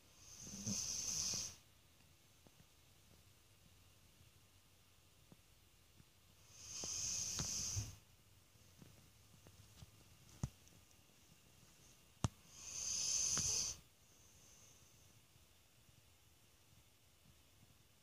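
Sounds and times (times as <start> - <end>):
dog snoring: 0.1 - 1.6, 6.4 - 8.0, 12.5 - 13.8.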